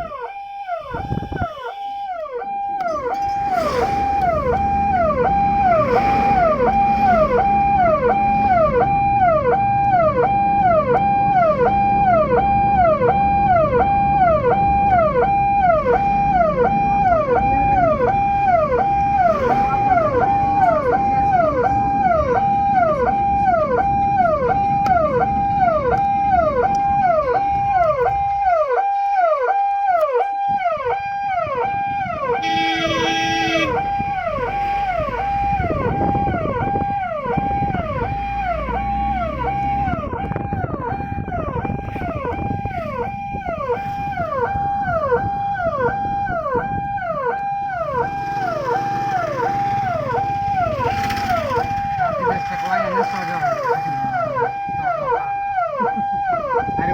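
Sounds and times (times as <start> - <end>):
ambulance siren: 0.0 - 56.9
buzzy tone: 32.4 - 33.9.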